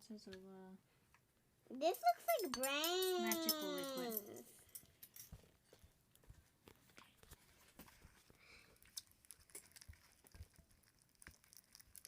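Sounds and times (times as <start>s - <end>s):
slime squelching and clicking: 8.8s - 12.0s.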